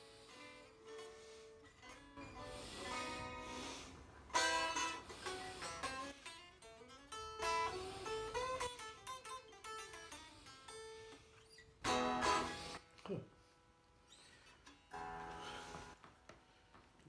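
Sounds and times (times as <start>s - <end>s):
guitar playing: 0.0s - 12.9s.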